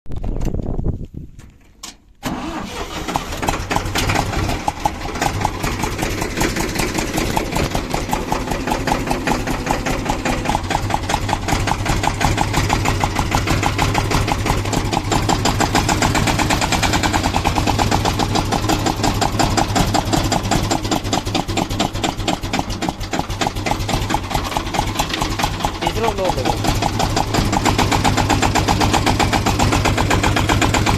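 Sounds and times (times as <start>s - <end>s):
tractor engine starting and running: 0.1s - 30.9s.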